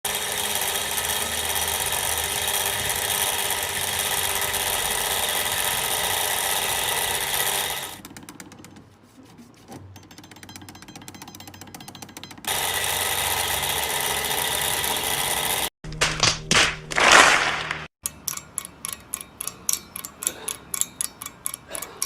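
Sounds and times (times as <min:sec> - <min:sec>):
high-pitched mechanical engine noise: 0:00.1 - 0:08.0, 0:10.0 - 0:15.7
rapid engine ticking: 0:00.1 - 0:08.8, 0:10.0 - 0:15.7, 0:18.0 - 0:22.0.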